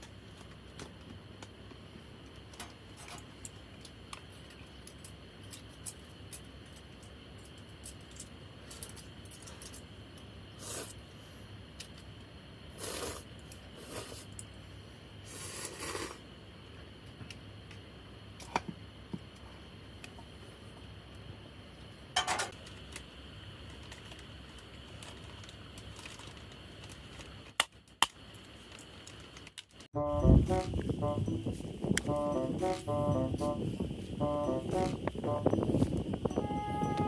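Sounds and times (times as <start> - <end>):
low steady hum: 16.2 - 37.0.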